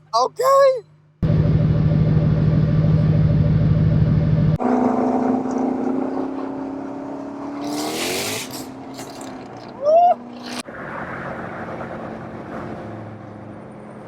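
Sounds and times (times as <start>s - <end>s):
car engine and exhaust running: 1.2s - 6.0s.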